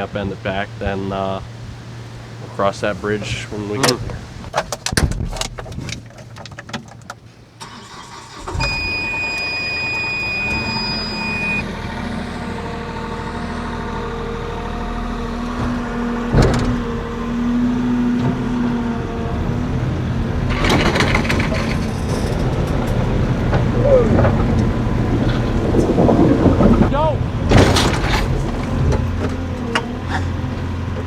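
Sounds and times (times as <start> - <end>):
vehicle engine running: 0.0 - 7.6, 8.3 - 31.0
high steady beep: 8.6 - 11.6.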